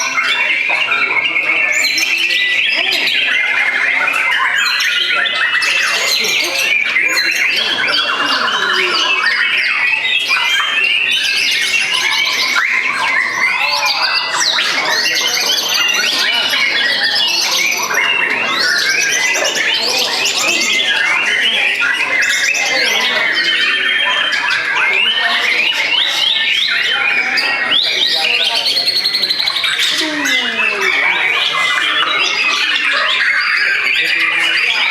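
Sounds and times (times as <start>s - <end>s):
songbirds singing and chattering: 0.0s - 34.9s.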